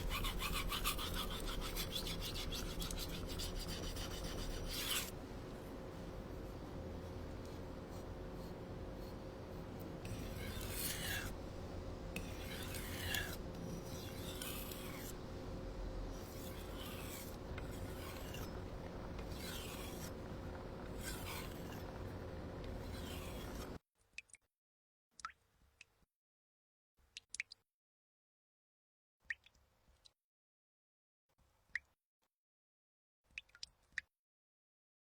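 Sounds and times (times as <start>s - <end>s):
blade being sharpened: 0.0s - 5.1s, 10.1s - 11.4s, 12.2s - 15.2s, 16.1s - 18.6s, 19.2s - 20.1s, 21.0s - 21.9s, 22.8s - 23.7s.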